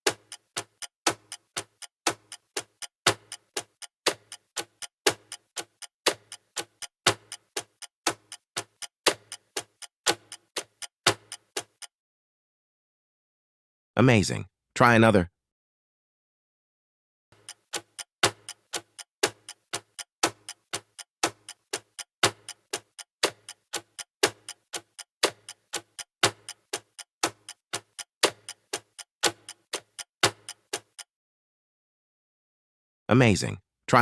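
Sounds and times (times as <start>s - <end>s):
clock ticking: 0.0s - 11.9s, 17.4s - 31.1s.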